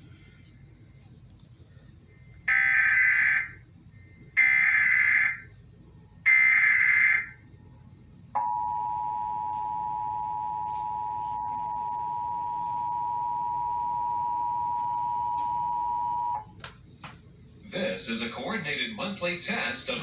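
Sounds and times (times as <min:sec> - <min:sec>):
two-tone attention signal: 0:08.4 - 0:16.4.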